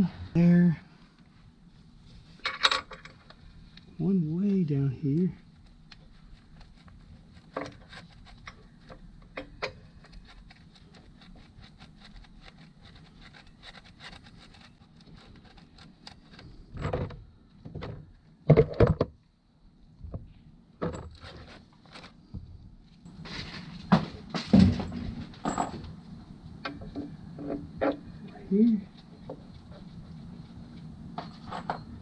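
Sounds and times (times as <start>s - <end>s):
metal parts and tools clunking: 2.4s - 3.4s, 23.2s - 26.0s, 31.2s - 32.0s.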